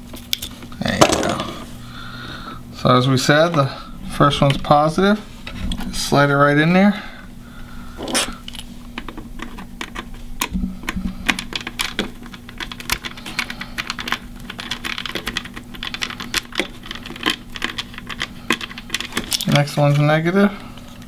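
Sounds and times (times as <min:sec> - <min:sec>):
small clicks and taps of plastic parts: 0:09.0 - 0:19.6.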